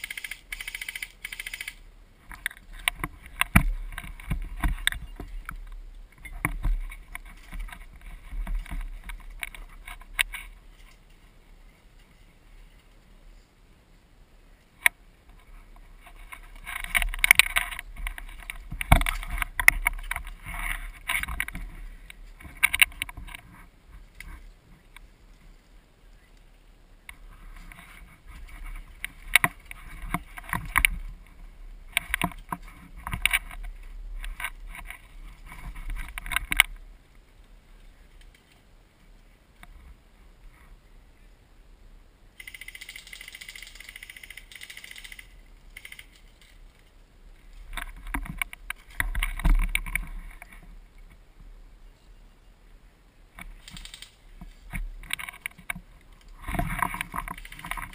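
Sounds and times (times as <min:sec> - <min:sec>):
sharp clicks and knocks: 0:00.0 - 0:11.0, 0:16.0 - 0:23.6, 0:27.1 - 0:31.2, 0:31.9 - 0:36.8, 0:47.6 - 0:50.7, 0:53.4 - 0:57.9
camera handling rustling and scraping: 0:02.3 - 0:11.1, 0:15.3 - 0:24.4, 0:27.1 - 0:36.8, 0:47.6 - 0:50.7, 0:53.4 - 0:57.9.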